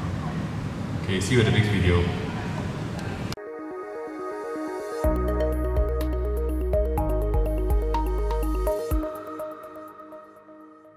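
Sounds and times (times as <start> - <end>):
arpeggiated synth melody: 3.4 - 10.9
heavy sustained bass: 5.0 - 9.2.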